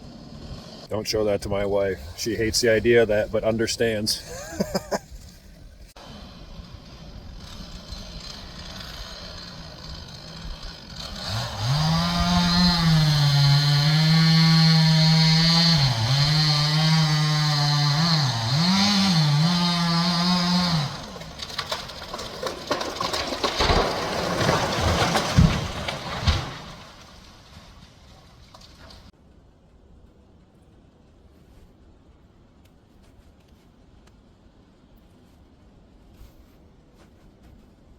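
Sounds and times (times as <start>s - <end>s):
chainsaw cutting at full throttle: 0.0s - 0.9s, 6.0s - 21.6s.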